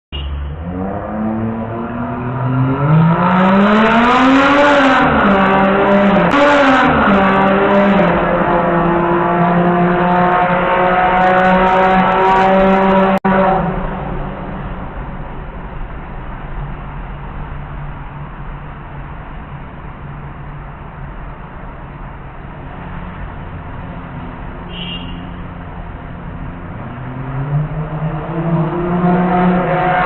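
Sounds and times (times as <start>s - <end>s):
car engine revving hard: 0.5s - 14.1s, 26.6s - 30.0s.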